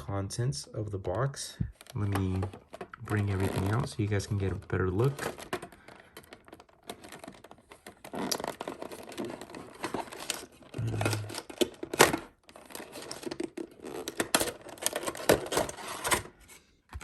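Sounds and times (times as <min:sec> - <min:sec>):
packaging rustling and crinkling: 0:01.7 - 0:16.4.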